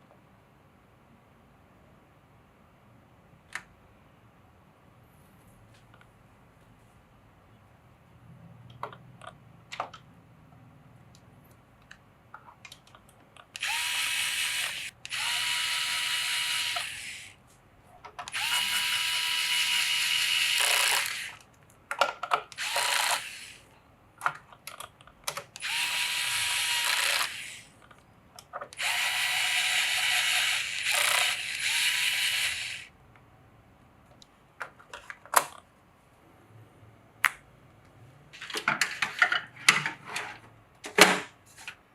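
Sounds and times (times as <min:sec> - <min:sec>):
clicks and taps of parts: 0:08.7 - 0:10.1, 0:11.2 - 0:13.7, 0:21.3 - 0:22.9
electric screwdriver whirring: 0:13.6 - 0:17.3, 0:18.3 - 0:21.4, 0:22.5 - 0:23.6, 0:25.6 - 0:27.7, 0:28.8 - 0:32.9.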